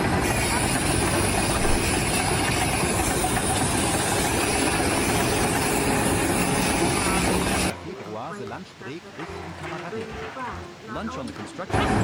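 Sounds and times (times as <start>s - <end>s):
steady engine noise: 0.0s - 7.8s, 11.7s - 12.0s.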